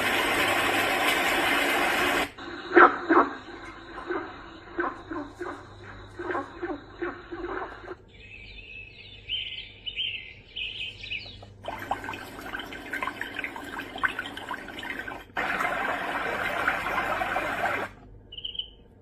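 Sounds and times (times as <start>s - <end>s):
flowing water: 0.0s - 2.4s, 11.4s - 18.0s
birds chirping: 3.8s - 18.9s.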